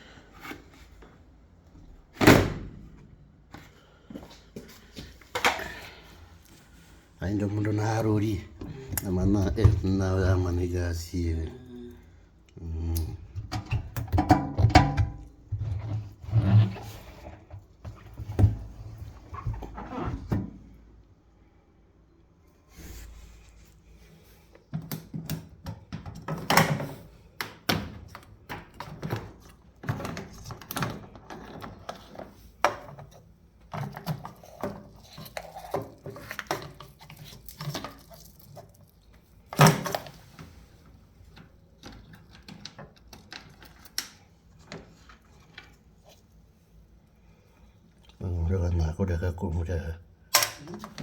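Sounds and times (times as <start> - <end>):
clatter of objects handled: 28.0 - 46.3.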